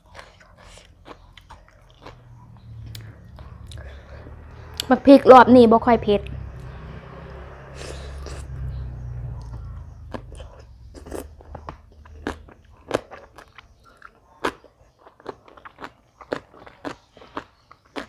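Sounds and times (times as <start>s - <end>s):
chewing crisp food: 0.0s - 4.9s, 7.7s - 18.0s
low hum: 1.6s - 13.6s.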